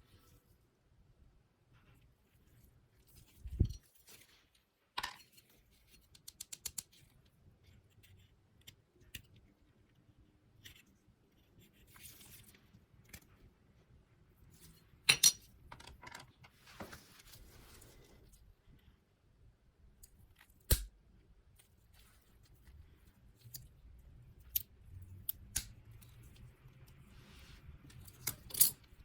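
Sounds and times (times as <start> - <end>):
clicks and taps of small objects: 6.0 - 7.1
soft rustling: 16.5 - 18.8.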